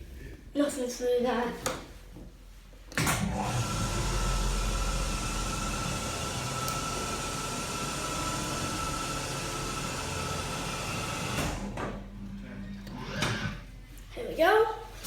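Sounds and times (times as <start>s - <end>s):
lift motor humming with whine: 3.0s - 13.9s.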